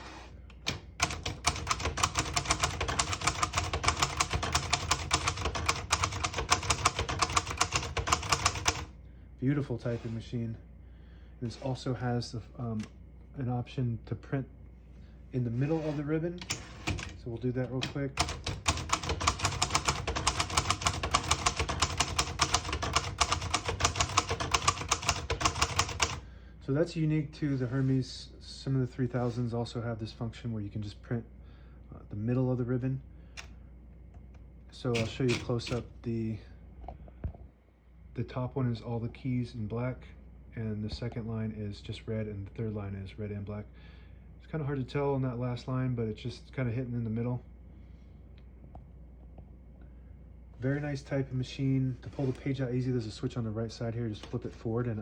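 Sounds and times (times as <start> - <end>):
typewriter keystrokes: 0.6 - 8.9, 16.4 - 17.2, 17.8 - 26.2, 34.9 - 35.8.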